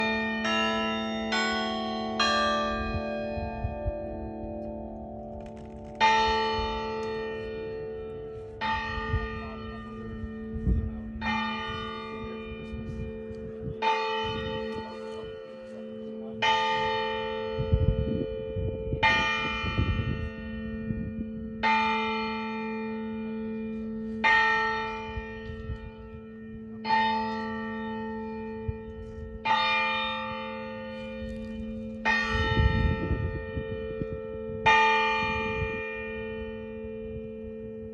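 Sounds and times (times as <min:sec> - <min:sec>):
church bell tolling: 0:00.0 - 0:37.9.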